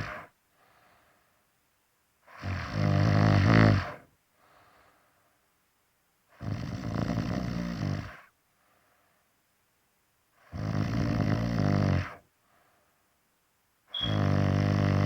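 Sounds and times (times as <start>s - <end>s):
person snoring: 0.0s - 0.3s, 2.3s - 4.0s, 6.4s - 8.3s, 10.4s - 12.2s, 14.1s - 15.0s
faint breath: 0.0s - 1.6s, 3.8s - 5.6s, 8.2s - 9.4s, 12.3s - 13.2s.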